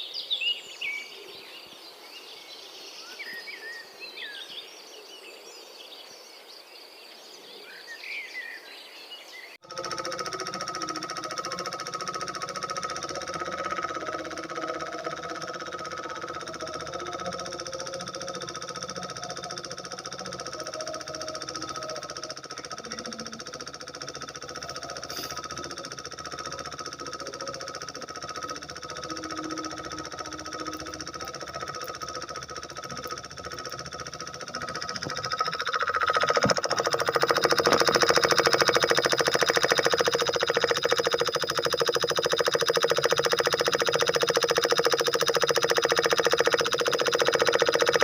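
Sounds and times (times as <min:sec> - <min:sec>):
small diesel engine running: 0:09.6 - 0:48.0.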